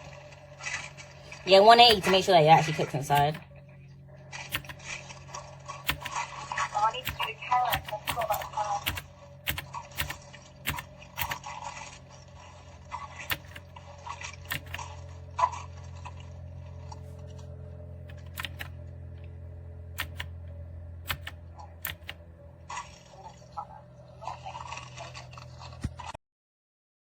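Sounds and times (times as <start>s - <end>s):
steady low hum: 0.0s - 26.2s
sharp clicks: 7.0s - 11.6s, 18.1s - 19.3s, 21.0s - 22.2s.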